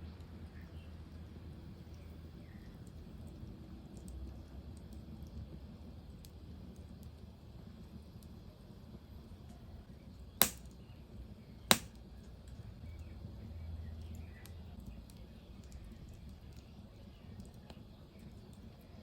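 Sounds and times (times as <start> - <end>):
wood fire crackling: 0.1 - 19.0
loud sharp pops: 10.4 - 10.7, 11.7 - 12.0.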